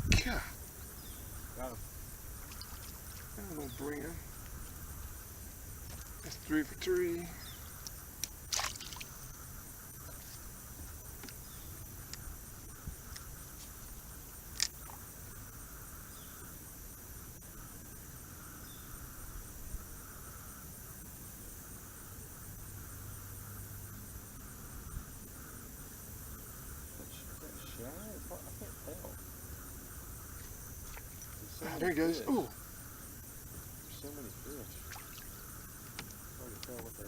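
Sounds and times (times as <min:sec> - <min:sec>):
insect hum: 0:00.0 - 0:37.0
small sharp clicks: 0:14.5 - 0:15.0.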